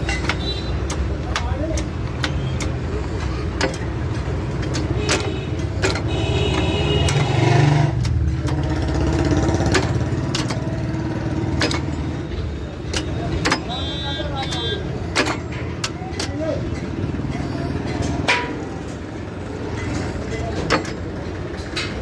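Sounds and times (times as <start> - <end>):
engine running: 2.0 - 13.5.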